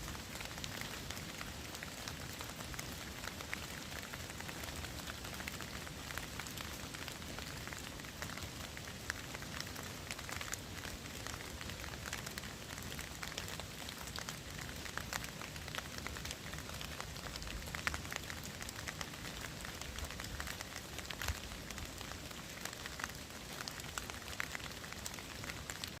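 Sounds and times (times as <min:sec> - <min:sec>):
steady rain: 0:00.0 - 0:26.0.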